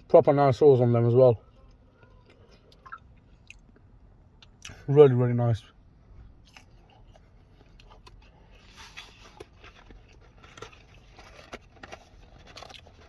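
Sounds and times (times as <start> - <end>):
person chewing: 1.6 - 4.7, 6.4 - 13.0.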